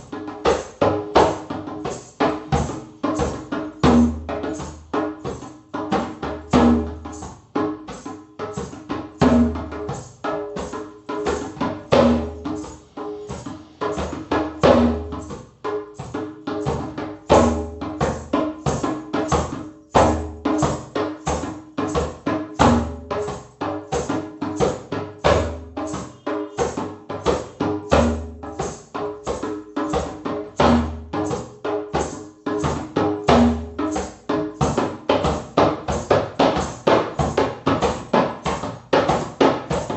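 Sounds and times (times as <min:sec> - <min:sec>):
fast percussion strikes: 0:00.0 - 0:39.9.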